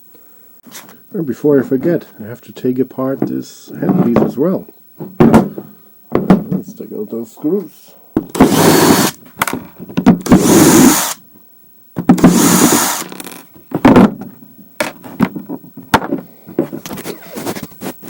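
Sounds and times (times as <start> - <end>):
electric screwdriver whirring: 8.3 - 9.2, 10.2 - 11.2, 12.2 - 13.4.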